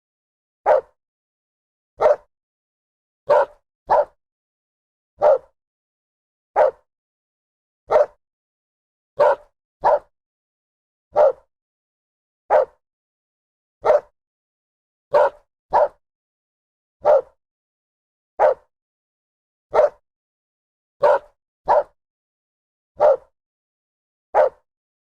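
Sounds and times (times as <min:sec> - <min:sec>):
dog barking: 0:00.6 - 0:01.0, 0:02.0 - 0:02.3, 0:03.3 - 0:04.2, 0:05.2 - 0:05.6, 0:06.6 - 0:06.9, 0:07.9 - 0:08.2, 0:09.2 - 0:10.1, 0:11.1 - 0:11.5, 0:12.5 - 0:12.8, 0:13.8 - 0:14.2, 0:15.1 - 0:16.0, 0:17.0 - 0:17.4, 0:18.4 - 0:18.7, 0:19.7 - 0:20.0, 0:21.0 - 0:22.0, 0:23.0 - 0:23.4, 0:24.3 - 0:24.6.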